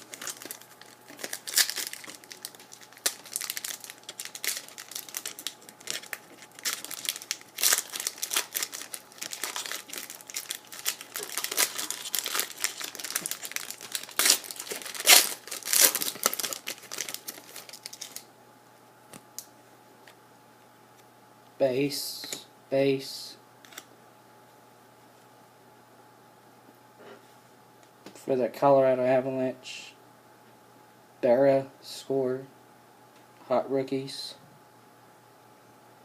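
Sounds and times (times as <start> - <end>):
packaging crinkling and rustling: 0.0 - 18.2.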